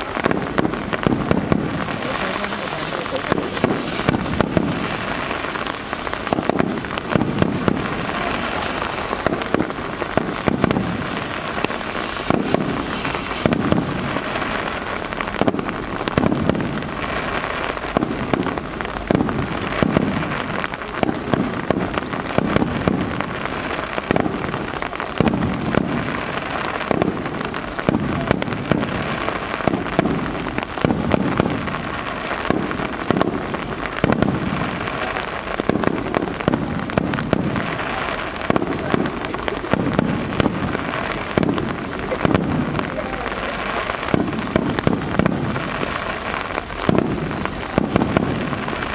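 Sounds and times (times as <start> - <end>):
fireworks bursting with deep booms: 0.0 - 48.9
rain hissing: 0.0 - 48.9.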